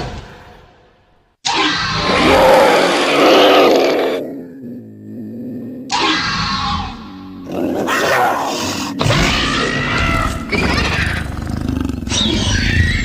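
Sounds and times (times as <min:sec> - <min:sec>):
creature screeching and growling: 0:01.4 - 0:04.3, 0:05.9 - 0:13.0.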